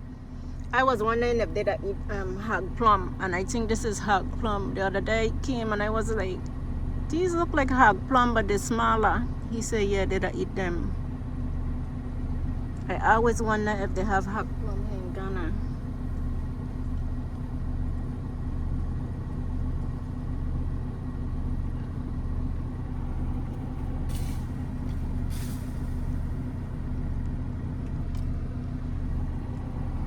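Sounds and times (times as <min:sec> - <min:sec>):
vehicle engine idling: 0:00.0 - 0:30.0
short hisses: 0:24.1 - 0:26.4.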